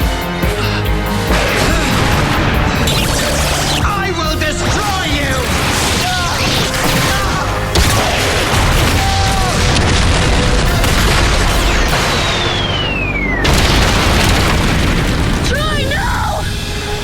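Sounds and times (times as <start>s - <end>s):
blasts and explosions: 0.0s - 17.0s
dramatic music: 0.0s - 17.0s
loud hit: 1.3s - 15.7s
falling whistle-like tone: 12.1s - 13.5s.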